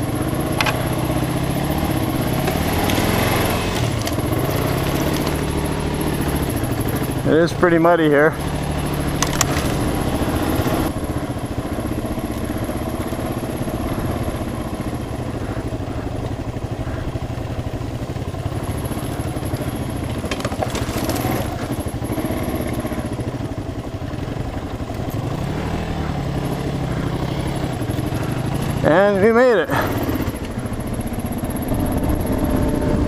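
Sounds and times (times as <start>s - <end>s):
motorcycle engine running: 0.0s - 33.0s
clatter of knocks: 20.2s - 21.2s.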